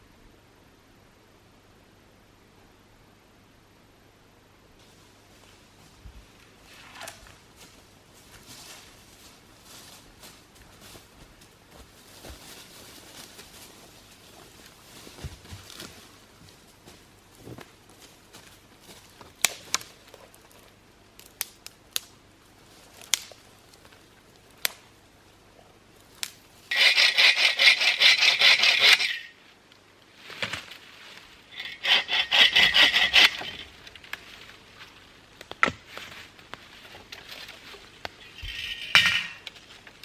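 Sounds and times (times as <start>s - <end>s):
hand saw cutting wood: 26.7s - 29.3s, 31.5s - 33.7s.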